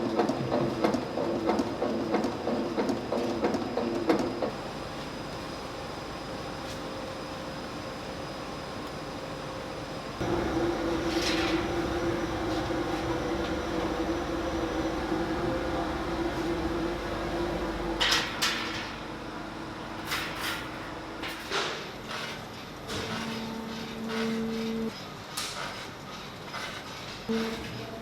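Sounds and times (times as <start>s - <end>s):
factory background noise: 0.0s - 28.0s
machine humming: 10.2s - 20.1s.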